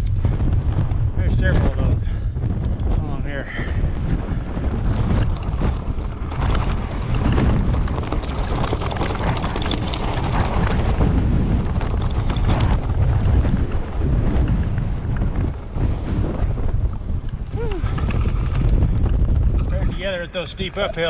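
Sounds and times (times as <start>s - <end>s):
small crackles: 0.0s - 20.0s
wind buffeting microphone: 0.0s - 21.0s.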